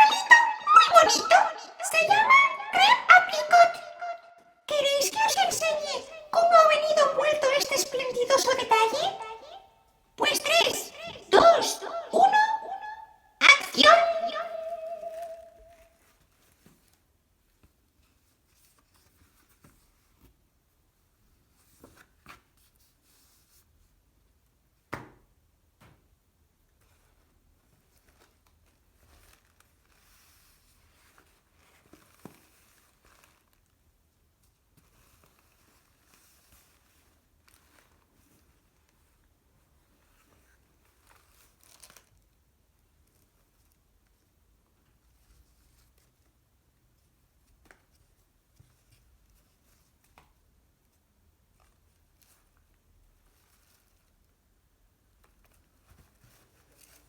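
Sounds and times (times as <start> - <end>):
packaging rustling and crinkling: 28.0 - 33.8, 40.8 - 42.3.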